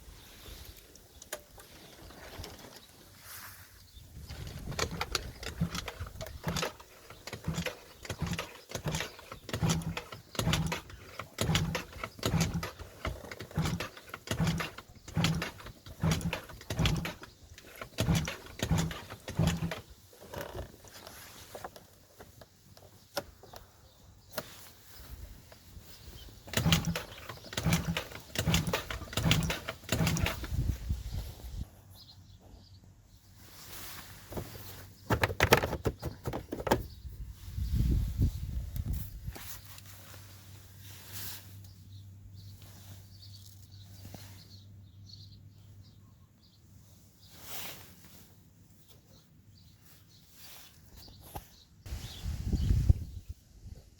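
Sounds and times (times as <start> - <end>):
scooter engine cranking: 0.8 - 3.1, 4.2 - 23.6, 26.3 - 30.9, 35.0 - 37.0.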